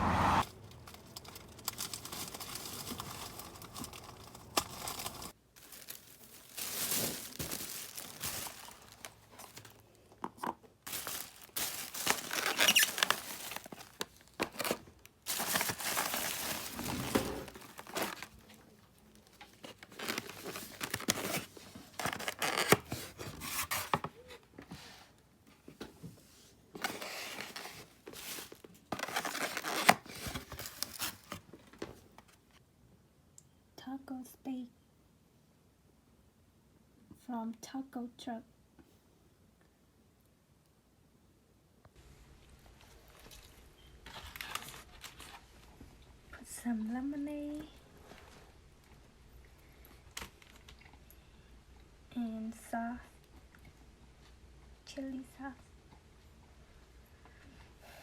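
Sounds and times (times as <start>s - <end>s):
paper wrapping rustling: 0.8s - 9.8s, 10.9s - 24.3s, 26.8s - 31.5s, 43.1s - 45.7s.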